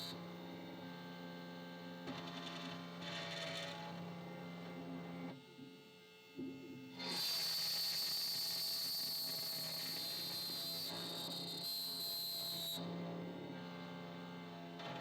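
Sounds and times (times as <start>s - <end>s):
key-cutting machine whine: 7.0s - 15.0s.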